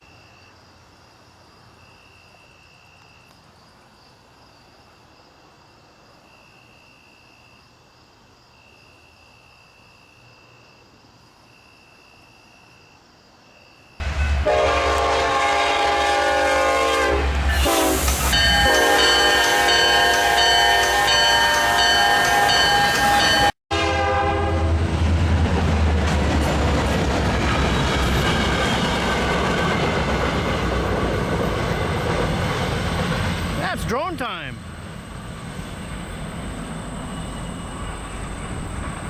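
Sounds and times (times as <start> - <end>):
locomotive air horn chord: 14.0 - 24.9.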